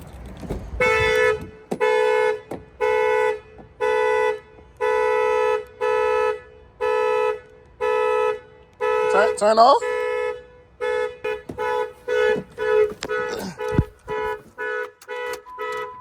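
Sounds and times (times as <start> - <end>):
car horn honking: 0.8 - 16.0.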